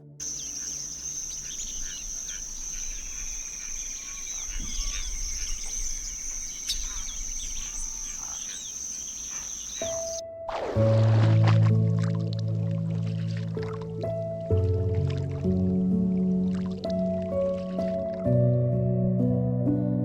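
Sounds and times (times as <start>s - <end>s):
birds chirping: 0.0s - 10.2s
high-pitched insect drone: 0.2s - 10.2s.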